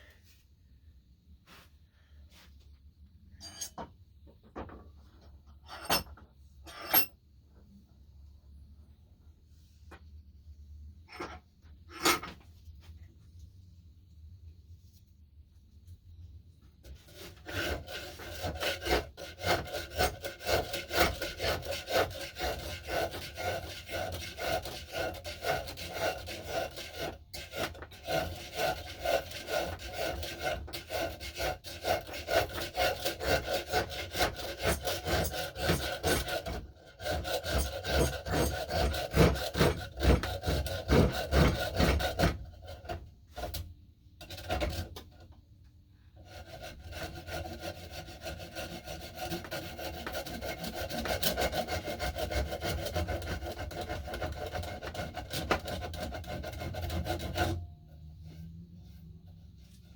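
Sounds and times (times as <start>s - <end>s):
hand tool rasping wood: 17.1s - 43.5s, 46.3s - 59.9s.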